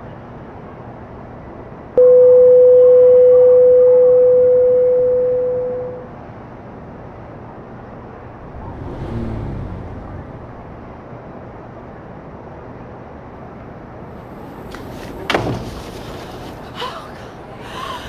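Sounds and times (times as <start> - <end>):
low downward sliding sound: 8.1 - 11.3.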